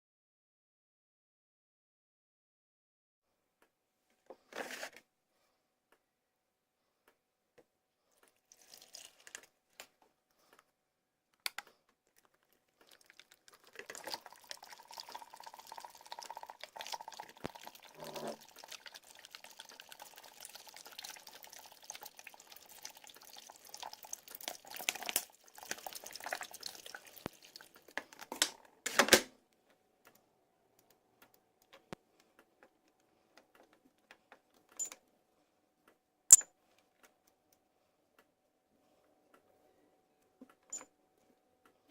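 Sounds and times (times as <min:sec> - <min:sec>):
water running and splashing: 0:08.5 - 0:09.4, 0:12.8 - 0:28.3.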